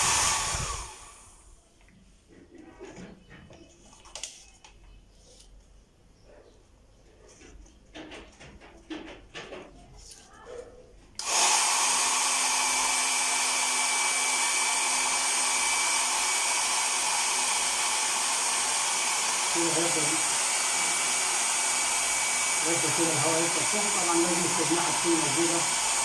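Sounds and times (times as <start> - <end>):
hair dryer blowing air: 0.0 - 1.4, 11.2 - 26.0.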